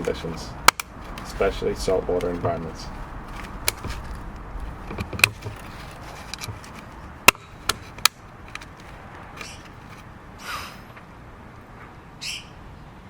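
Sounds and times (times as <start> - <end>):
metal knocks and clicks: 0.0 - 10.0.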